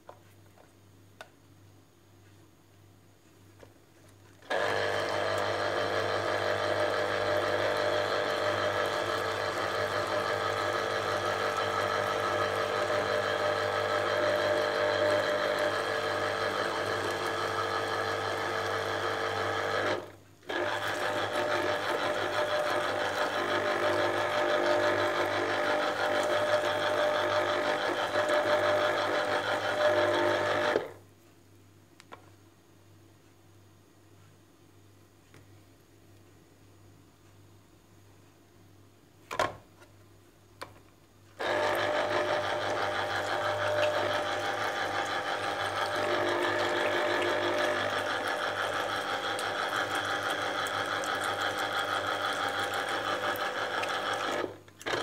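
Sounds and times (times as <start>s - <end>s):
kitchen appliance motor running: 4.5s - 30.9s, 41.4s - 55.0s.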